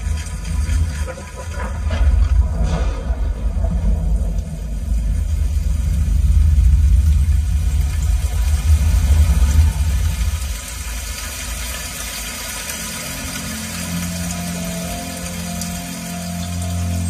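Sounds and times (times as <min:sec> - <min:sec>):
deep bass rumble: 0:00.0 - 0:12.2.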